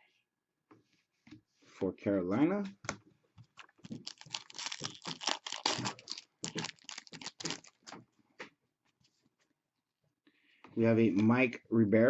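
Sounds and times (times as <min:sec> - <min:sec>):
trading cards clicking and rustling: 0:03.6 - 0:08.0.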